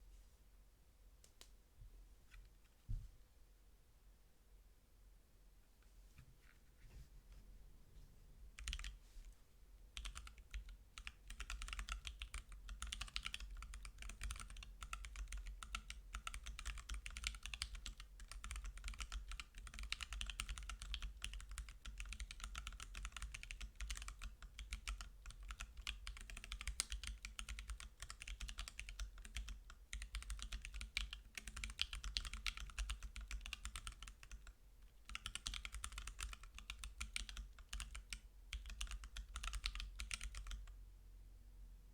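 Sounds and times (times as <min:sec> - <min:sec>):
fast typing on keyboard: 0:08.6 - 0:08.9, 0:10.0 - 0:40.7.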